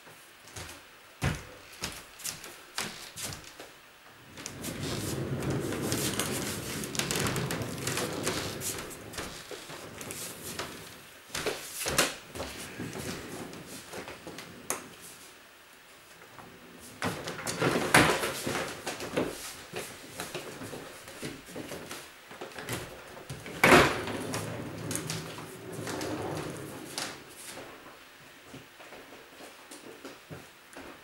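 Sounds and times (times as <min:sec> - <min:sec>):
boxes knocking and scraping: 0:04.4 - 0:14.7, 0:22.5 - 0:27.7.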